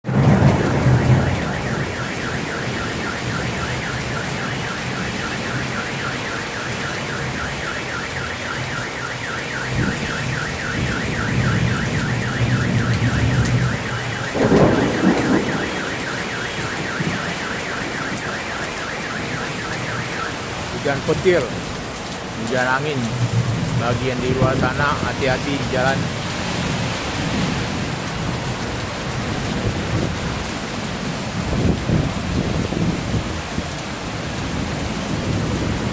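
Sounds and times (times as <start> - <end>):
heavy rain: 0.0 - 35.9
thunder rumbling: 0.0 - 35.9
car alarm warbling: 0.1 - 21.6, 22.4 - 27.5.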